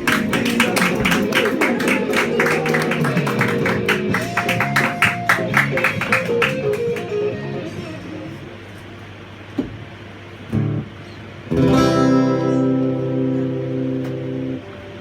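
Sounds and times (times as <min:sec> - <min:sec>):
guitar strummed percussively: 0:00.0 - 0:08.4, 0:10.5 - 0:10.9, 0:11.5 - 0:15.0
held bass notes: 0:10.5 - 0:15.0.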